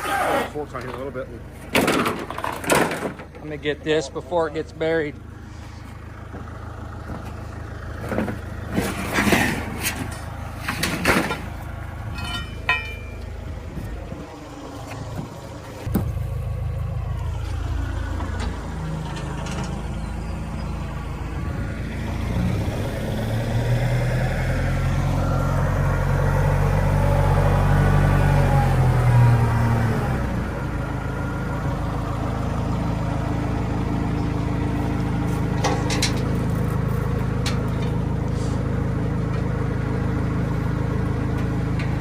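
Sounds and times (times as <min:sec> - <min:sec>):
loader engine running: 0:00.0 - 0:42.0
sharp knocks and rattles: 0:00.9 - 0:03.5, 0:08.0 - 0:13.4, 0:35.5 - 0:36.7.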